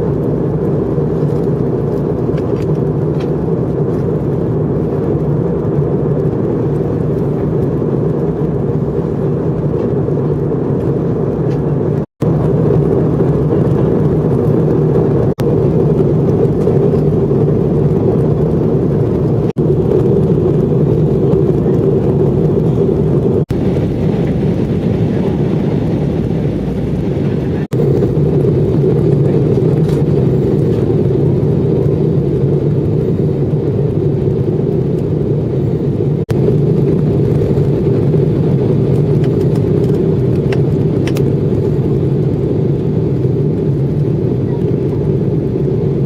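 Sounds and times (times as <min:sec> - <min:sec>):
airliner engines droning in cabin: 0:00.0 - 0:46.0.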